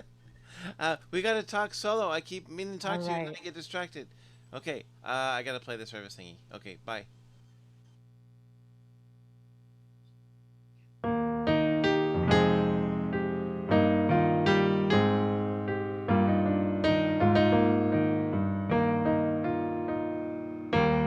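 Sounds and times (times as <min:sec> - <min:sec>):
faint low hum: 0:00.0 - 0:11.1
slow piano chords: 0:11.0 - 0:21.0.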